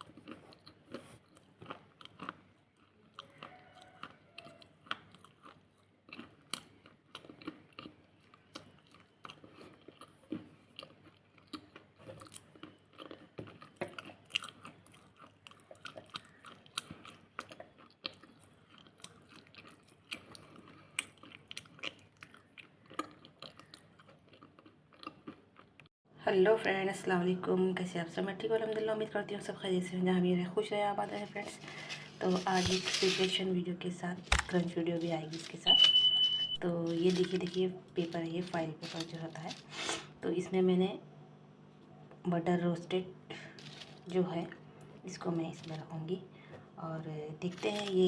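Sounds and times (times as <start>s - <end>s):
crunchy food being chewed: 0.0s - 25.9s, 31.0s - 33.4s, 36.7s - 40.1s, 43.4s - 46.0s, 47.4s - 48.0s.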